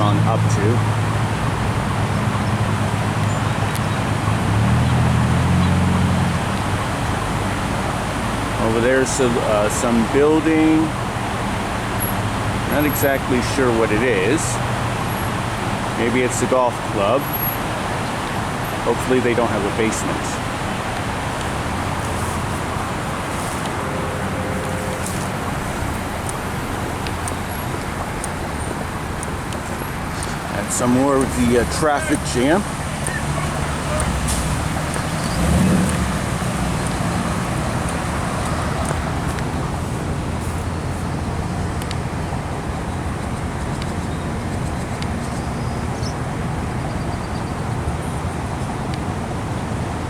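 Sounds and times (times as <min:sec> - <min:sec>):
road traffic noise: 0:00.0 - 0:50.0
vehicle engine hum: 0:00.0 - 0:50.0
steady rushing noise: 0:18.8 - 0:43.8.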